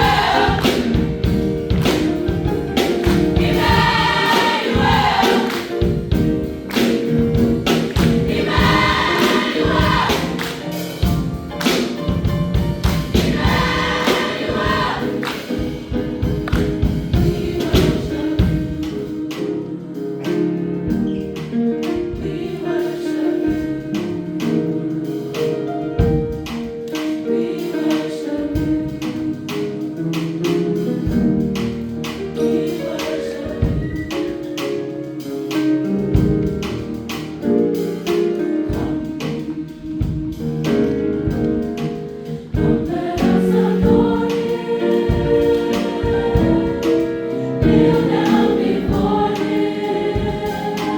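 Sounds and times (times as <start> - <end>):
choir singing: 0.0 - 6.9, 7.8 - 12.3, 13.0 - 20.9, 22.0 - 25.2, 27.2 - 29.4, 32.4 - 34.6, 41.7 - 50.9
drum strikes: 0.0 - 19.1, 35.5 - 50.9
band playing: 0.0 - 19.9, 32.4 - 50.9.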